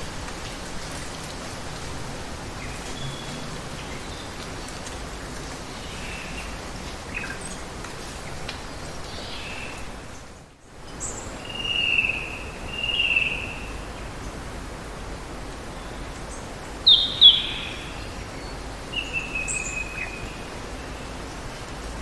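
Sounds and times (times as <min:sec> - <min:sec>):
birds whistling and chirping: 0:16.9 - 0:18.1.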